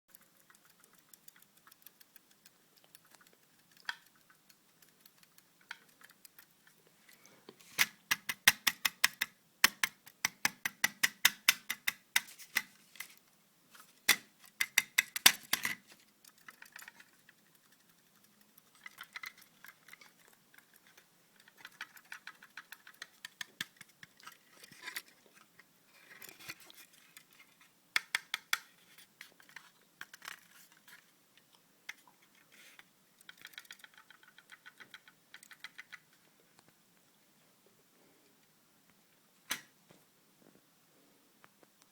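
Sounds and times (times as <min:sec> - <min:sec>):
drive clicking and ticking: 0:00.1 - 0:06.7.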